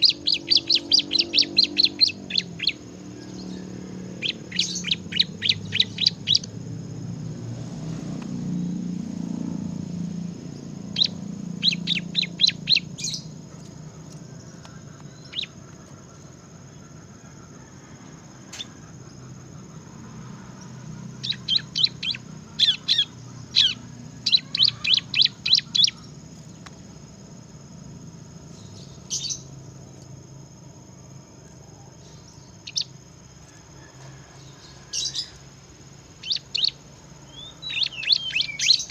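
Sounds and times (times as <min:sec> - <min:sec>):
bird singing sharp high chirps: 0:00.0 - 0:06.6, 0:10.2 - 0:16.3, 0:21.0 - 0:26.2, 0:36.2 - 0:38.9
steady low hum: 0:00.0 - 0:38.9.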